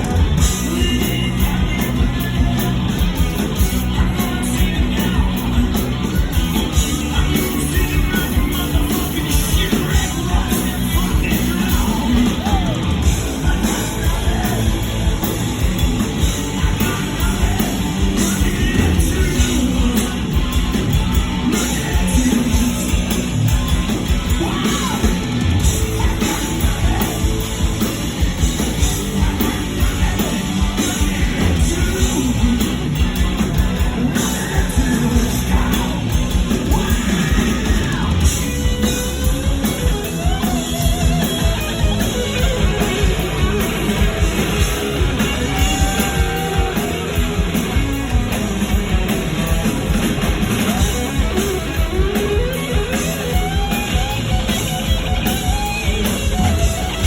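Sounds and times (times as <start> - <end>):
rock band playing live: 0.0 - 57.0
shouted vocals: 6.6 - 15.4, 24.0 - 27.9, 42.3 - 48.7.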